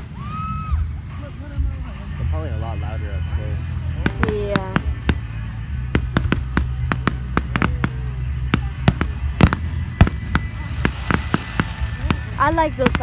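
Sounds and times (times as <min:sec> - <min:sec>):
fireworks bangs: 0:03.6 - 0:13.0.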